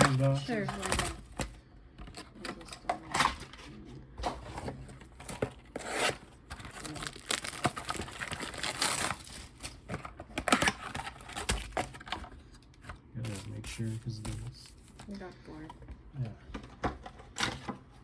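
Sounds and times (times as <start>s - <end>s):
wrapping crinkling and tearing: 5.2s - 12.1s.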